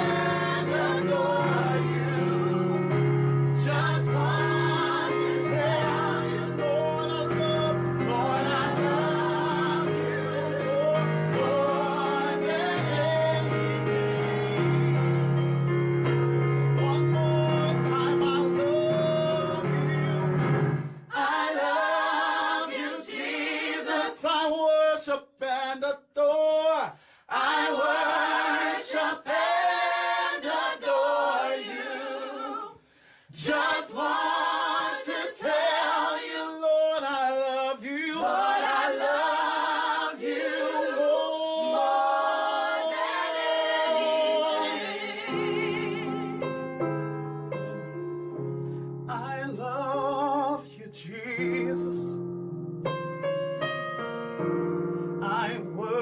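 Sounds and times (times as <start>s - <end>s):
vocal group singing in harmony: 0.0s - 15.6s, 16.7s - 26.0s, 26.7s - 46.6s, 55.2s - 56.0s
keyboard: 0.0s - 23.6s, 41.7s - 56.0s.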